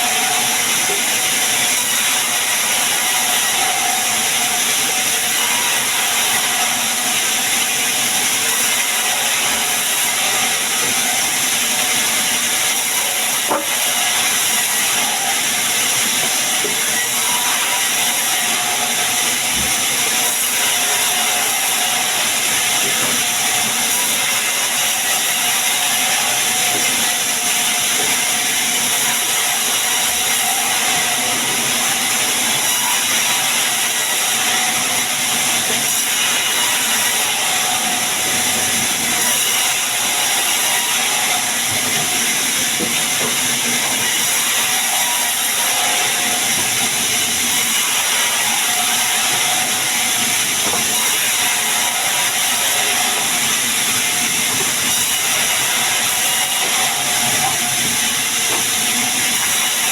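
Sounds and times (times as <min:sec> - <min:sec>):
sawmill saw running: 0:00.0 - 0:59.9.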